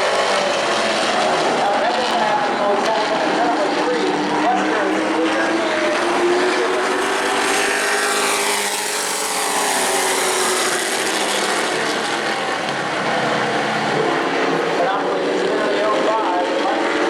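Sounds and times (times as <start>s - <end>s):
racing truck engines passing: 0.0s - 17.0s.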